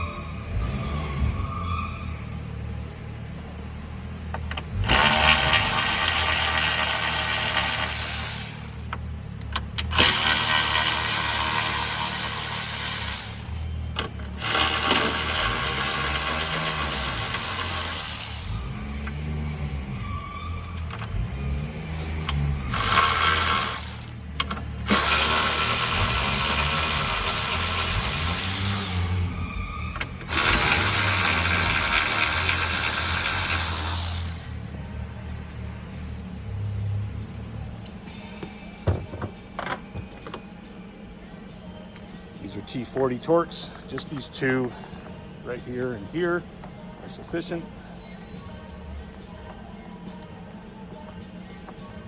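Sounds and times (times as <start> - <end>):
power driver running: 4.6 - 8.9, 9.5 - 13.8, 14.4 - 18.8, 22.7 - 29.5, 30.2 - 34.6.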